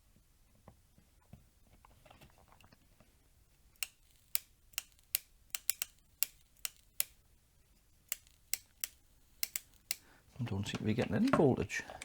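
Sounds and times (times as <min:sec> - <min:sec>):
electrical crackling clicks: 0:03.8 - 0:07.2, 0:08.1 - 0:11.5.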